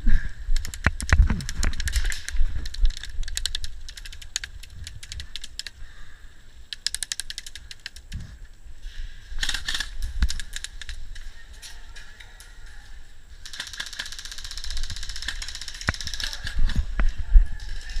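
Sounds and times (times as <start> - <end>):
airsoft guns firing: 9.4 - 11.0, 13.4 - 16.7.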